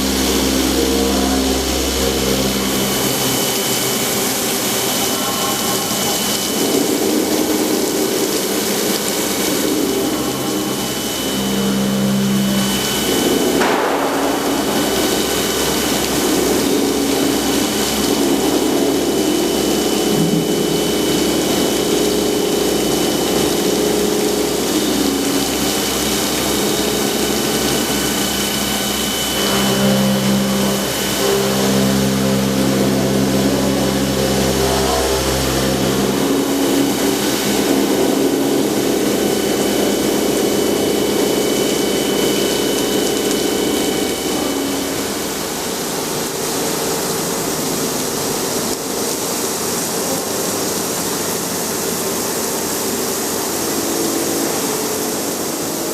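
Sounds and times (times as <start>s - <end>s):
constant hiss: 0.0s - 55.9s
stone-cutting saw motors humming: 0.0s - 55.9s.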